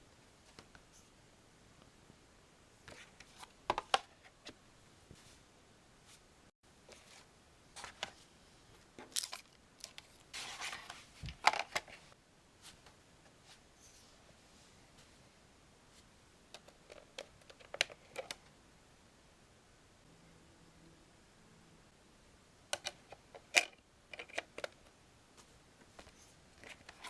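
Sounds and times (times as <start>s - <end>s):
cd packaging clicks and rustles: 8.8s - 12.0s, 16.5s - 18.5s.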